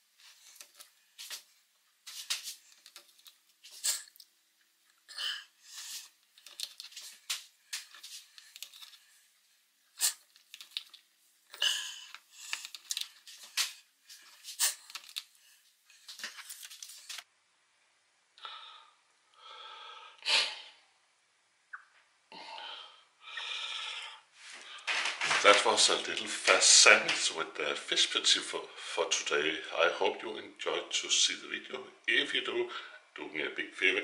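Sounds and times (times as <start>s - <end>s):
wrapper crinkling: 5.8s - 9.1s, 10.0s - 11.0s, 11.6s - 17.2s, 24.9s - 27.3s
crisp bites and chewing: 10.1s - 11.0s, 14.6s - 15.3s
breathy mouth and nose sounds: 11.5s - 16.1s.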